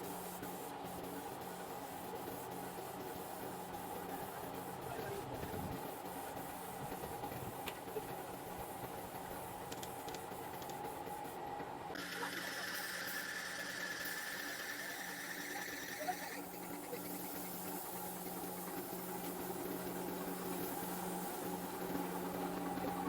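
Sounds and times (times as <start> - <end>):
air conditioner compressor hum: 0.0 - 23.0
high steady tone with hiss: 12.0 - 23.0.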